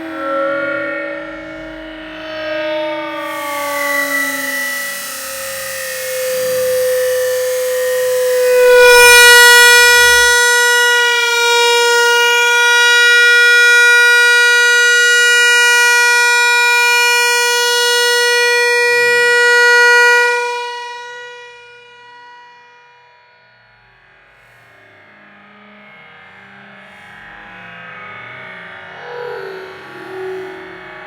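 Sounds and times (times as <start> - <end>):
air horn blast: 3.3 - 20.8, 28.9 - 31.0.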